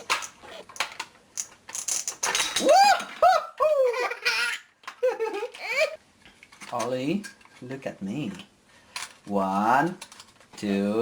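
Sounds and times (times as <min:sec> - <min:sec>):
plastic toy pieces clicking: 0:00.0 - 0:02.7.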